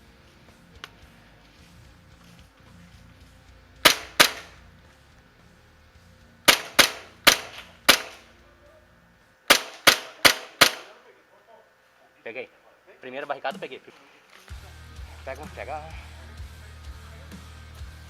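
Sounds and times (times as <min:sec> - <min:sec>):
airsoft gun firing single shots: 0:03.8 - 0:04.6, 0:06.5 - 0:08.3, 0:09.5 - 0:11.0.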